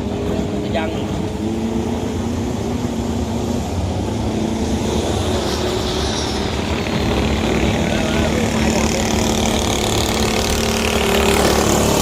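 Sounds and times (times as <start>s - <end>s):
boat engine running: 0.0s - 12.0s.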